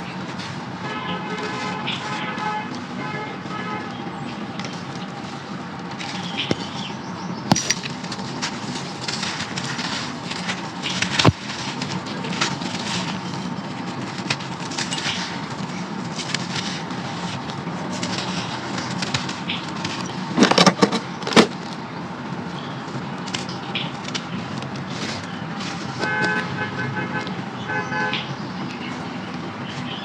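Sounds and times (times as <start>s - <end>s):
steady background hum: 0.0s - 30.0s
sand crunching in clay pot: 4.6s - 20.4s.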